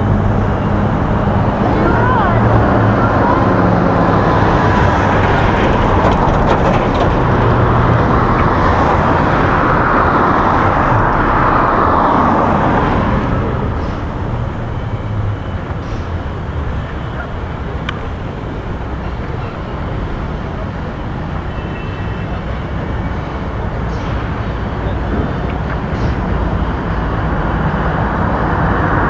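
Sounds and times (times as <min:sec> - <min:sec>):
vehicle passing: 0:00.0 - 0:18.2
street traffic noise: 0:00.0 - 0:29.0.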